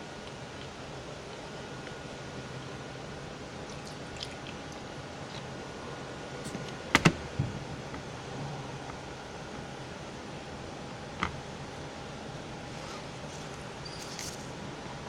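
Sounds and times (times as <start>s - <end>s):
sharp snaps: 6.5s - 7.4s.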